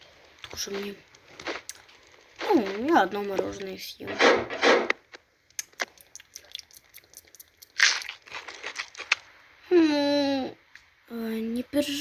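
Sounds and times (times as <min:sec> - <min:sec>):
wrapper crinkling and tearing: 0:07.7 - 0:09.3.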